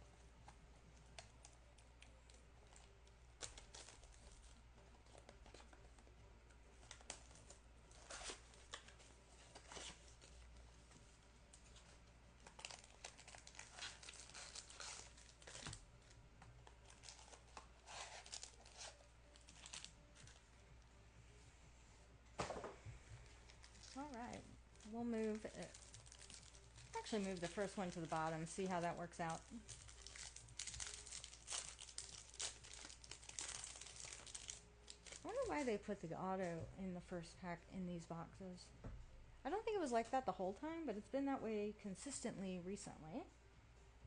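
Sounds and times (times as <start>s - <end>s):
card pack wrappers tearing: 1.2s - 5.8s, 12.4s - 20.4s, 23.5s - 35.6s.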